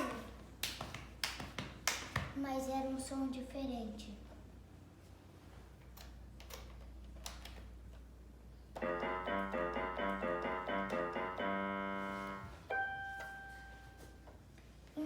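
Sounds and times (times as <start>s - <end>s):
keyboard notes and chord: 8.8s - 14.1s.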